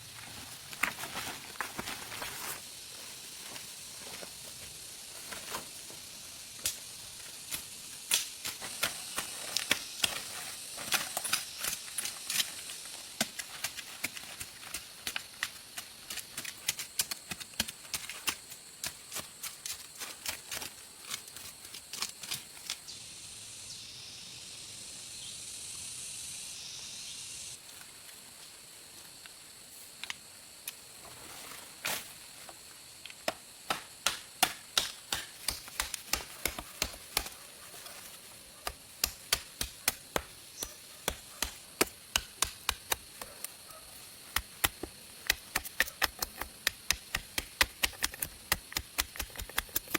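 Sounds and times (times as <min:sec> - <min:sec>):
steady high hiss: 0:00.0 - 0:16.5, 0:22.2 - 0:45.9
chopping strikes on wood: 0:33.3 - 0:37.4, 0:38.6 - 0:43.3.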